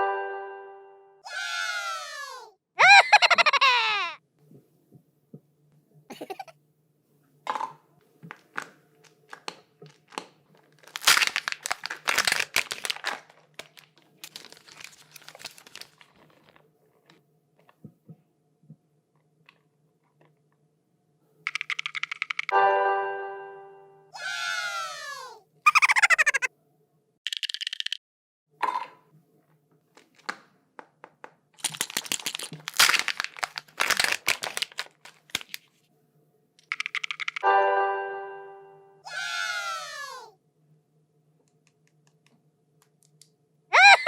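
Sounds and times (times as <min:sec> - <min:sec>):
wrappers crinkling and tearing: 0:09.3 - 0:16.6, 0:31.6 - 0:35.7.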